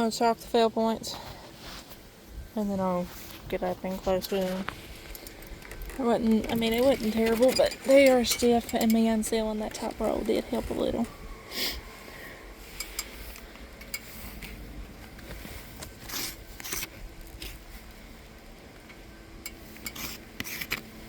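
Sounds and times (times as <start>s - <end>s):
light clicks of shingles: 3.1s - 11.2s.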